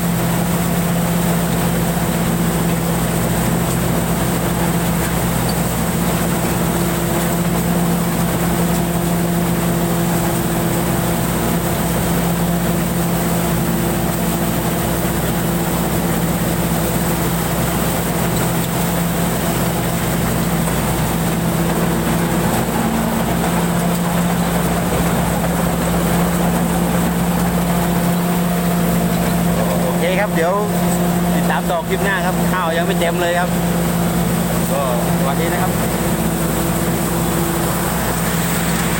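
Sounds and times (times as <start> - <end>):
combine harvester engine hum: 0.0 - 38.9
thin high machinery whine: 13.2 - 38.9.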